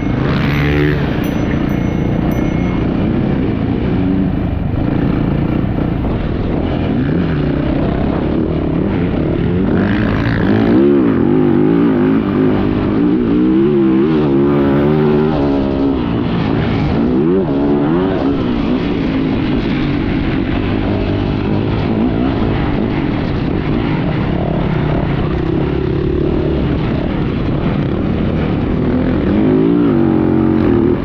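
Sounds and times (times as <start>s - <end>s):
motocross bike engine revving: 0.0s - 5.9s.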